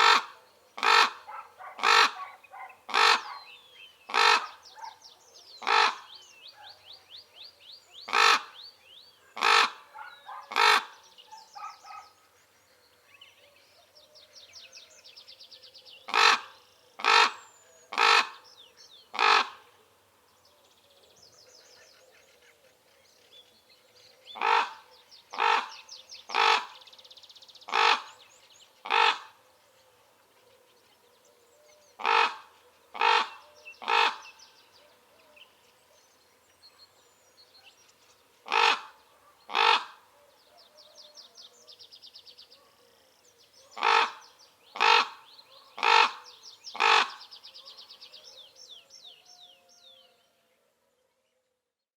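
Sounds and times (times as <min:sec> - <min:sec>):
ravens croaking: 0:00.0 - 0:03.5, 0:04.1 - 0:05.0, 0:05.6 - 0:06.2, 0:08.1 - 0:08.6, 0:09.4 - 0:12.1, 0:16.1 - 0:18.4, 0:19.1 - 0:19.8, 0:24.4 - 0:26.9, 0:27.7 - 0:28.2, 0:28.8 - 0:29.4, 0:32.0 - 0:34.4, 0:38.4 - 0:40.1, 0:43.8 - 0:47.4.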